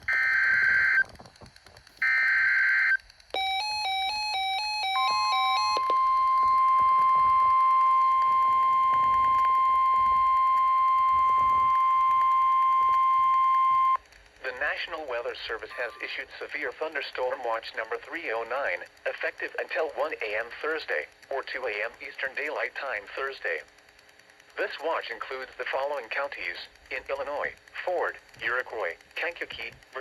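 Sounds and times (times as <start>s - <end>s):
alternating chime tones: 3.4s - 14.0s.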